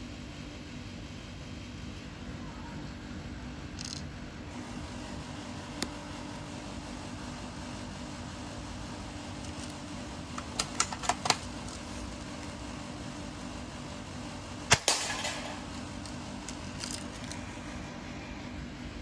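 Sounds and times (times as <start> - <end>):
airsoft gun mechanical clicks: 3.8 - 4.0
airsoft gun shot: 14.7 - 15.7.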